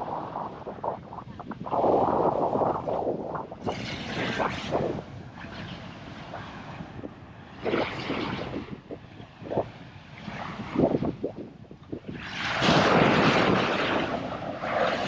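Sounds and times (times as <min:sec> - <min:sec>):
wind buffeting microphone: 0:00.0 - 0:15.0
breaking surf: 0:12.2 - 0:15.0.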